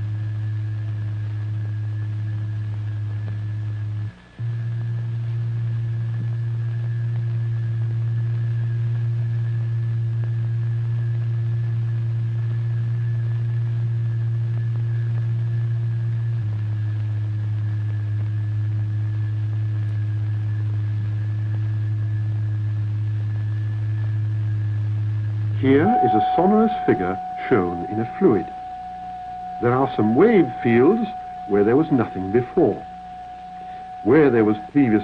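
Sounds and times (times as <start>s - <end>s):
film hiss: 0.0s - 35.0s
low electronic drive tone: 0.0s - 35.0s.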